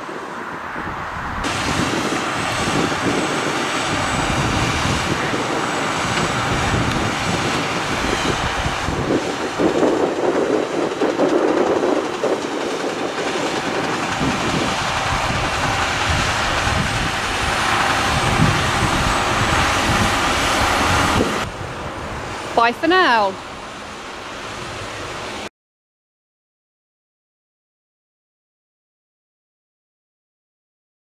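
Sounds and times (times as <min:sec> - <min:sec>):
tractor engine running: 0:01.3 - 0:25.4.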